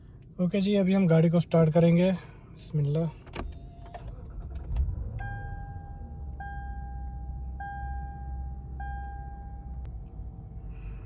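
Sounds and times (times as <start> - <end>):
suv engine starting and idling: 3.2 - 11.0
dashboard warning chime: 5.2 - 9.9.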